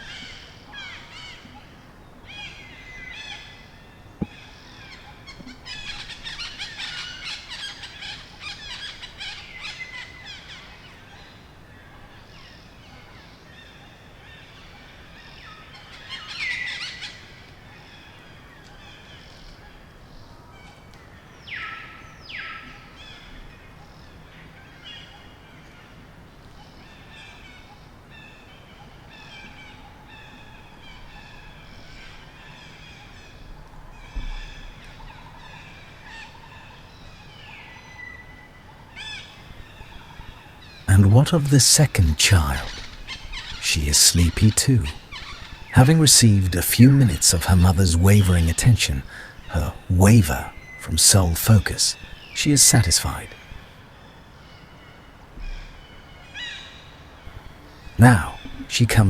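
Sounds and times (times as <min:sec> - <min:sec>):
birds chirping and calling: 0:00.0 - 0:13.7, 0:38.9 - 0:59.0
sharp bird calls: 0:00.0 - 0:13.7, 0:27.0 - 0:59.0
loud falling bird call: 0:39.6 - 0:53.6.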